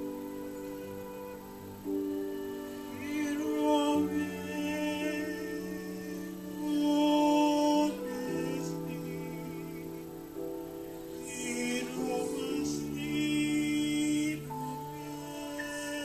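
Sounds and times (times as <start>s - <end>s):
person singing long notes: 0.0s - 16.0s.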